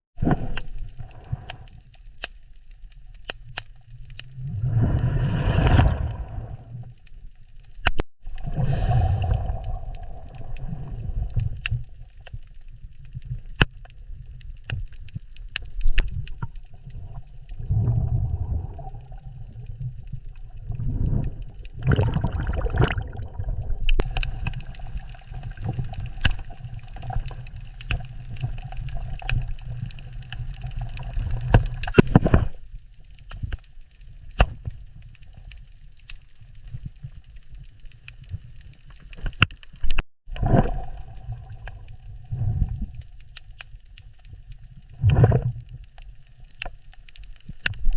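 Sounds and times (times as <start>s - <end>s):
underwater rumble of moving water: 0.2s - 47.9s
water gurgling: 3.9s - 6.9s, 8.2s - 13.2s, 15.8s - 32.6s, 39.2s - 46.7s
sharp underwater clicks: 7.7s - 8.5s, 9.2s - 34.8s, 38.0s - 47.9s.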